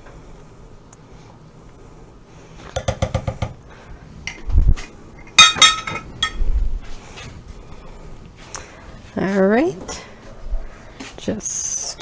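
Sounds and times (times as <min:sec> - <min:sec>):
kitchenware clinking on a saucepan: 0:05.4 - 0:06.4.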